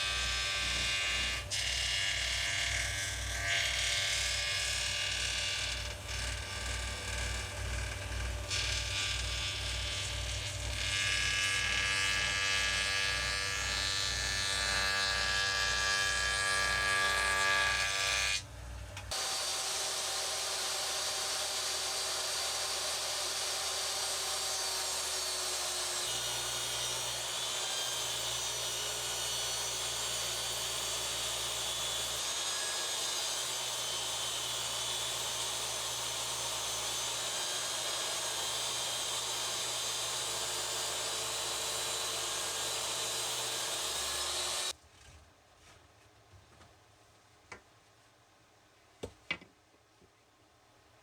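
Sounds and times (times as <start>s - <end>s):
woodworking power tool running: 19.1s - 44.8s.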